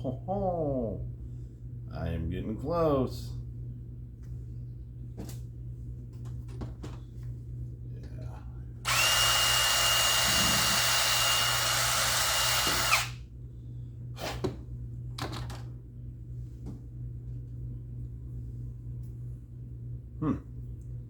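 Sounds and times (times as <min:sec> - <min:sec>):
power drill whining: 0:08.8 - 0:13.2.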